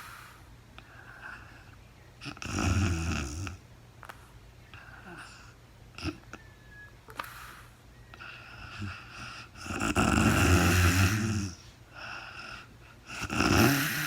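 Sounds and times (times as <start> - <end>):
soft breaths: 0.0 - 14.0
woman snoring: 2.3 - 3.6, 8.6 - 11.6, 13.1 - 14.0.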